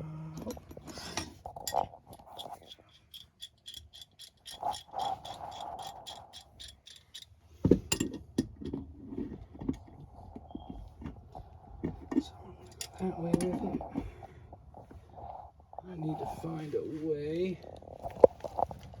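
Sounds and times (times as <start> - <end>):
rapid metallic ticks: 2.2 - 7.4.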